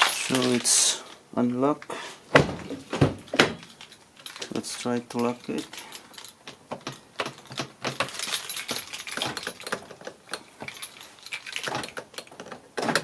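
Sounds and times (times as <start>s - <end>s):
key rattling in door lock: 2.8s - 13.0s
key ring jangling: 3.6s - 9.9s, 10.6s - 12.3s.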